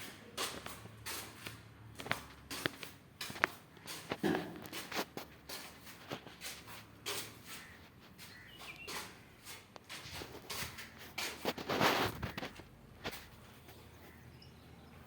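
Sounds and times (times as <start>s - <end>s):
scraping: 3.8s - 13.8s.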